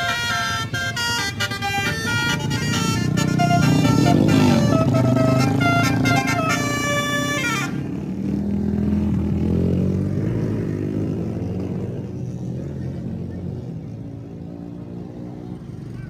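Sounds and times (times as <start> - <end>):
bus diesel engine running: 0.0 - 8.4.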